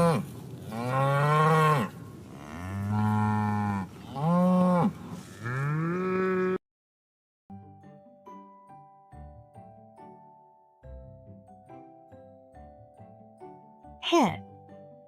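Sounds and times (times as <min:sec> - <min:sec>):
cow mooing: 0:00.0 - 0:06.6.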